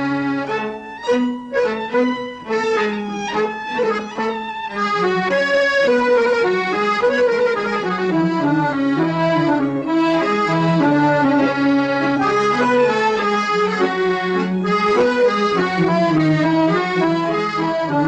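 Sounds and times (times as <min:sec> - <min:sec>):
accordion-like melody: 0:00.0 - 0:18.0
steady bass line: 0:04.8 - 0:18.0.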